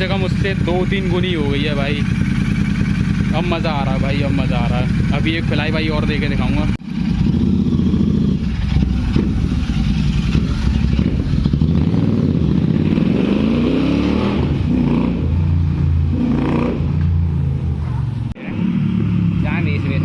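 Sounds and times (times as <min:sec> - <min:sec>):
motorcycle engine revving: 0:00.0 - 0:20.0.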